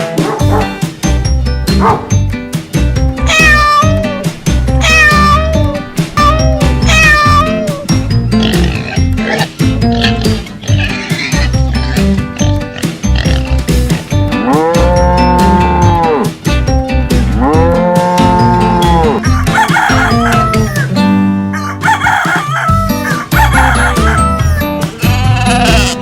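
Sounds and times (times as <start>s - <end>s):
music beat: 3.0s - 10.8s
chicken calling: 3.3s - 7.9s, 19.2s - 20.9s, 21.5s - 26.0s
cow mooing: 14.3s - 16.3s, 17.2s - 19.2s, 25.0s - 26.0s.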